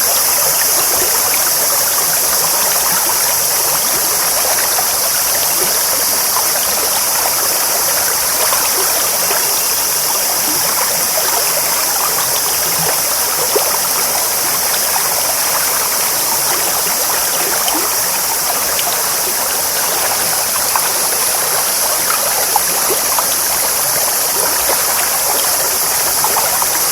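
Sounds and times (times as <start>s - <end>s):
stream babbling over stones: 0.0s - 26.9s.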